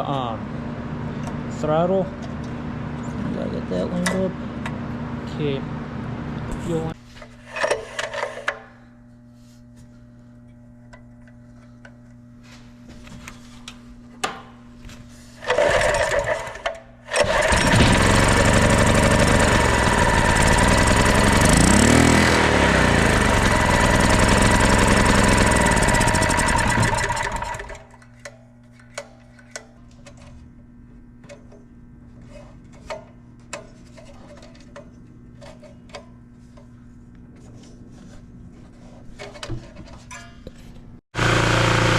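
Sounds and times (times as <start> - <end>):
small generator engine running: 15.4 - 28.0, 41.2 - 41.9.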